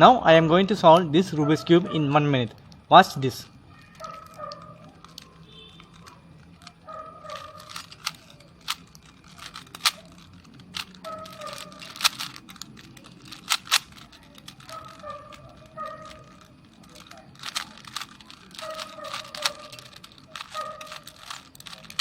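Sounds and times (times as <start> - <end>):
puzzle cube plastic clicking: 2.3 - 22.0.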